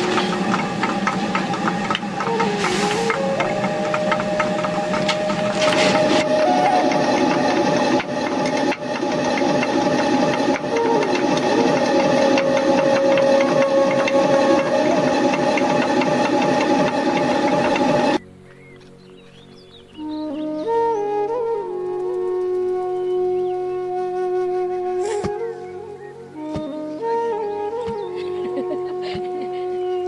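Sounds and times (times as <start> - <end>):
small engine rattling: 0.0 - 18.2
instrumental music held notes: 0.0 - 30.0.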